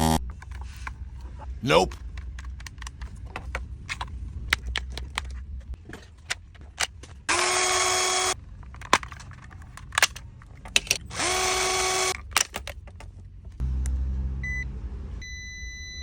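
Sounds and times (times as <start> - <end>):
handling clicks and knocks: 0.3 - 7.5, 8.3 - 11.4, 12.0 - 13.6
small compressor motor running: 7.3 - 8.4, 10.8 - 12.2.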